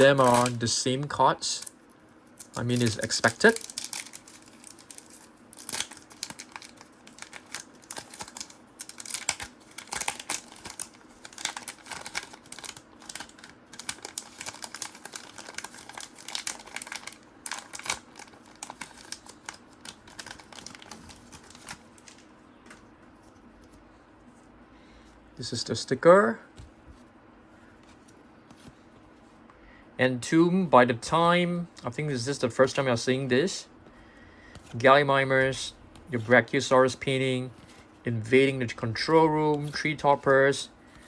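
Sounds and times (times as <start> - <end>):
wrapper crinkling: 0.0 - 0.6, 1.6 - 22.3.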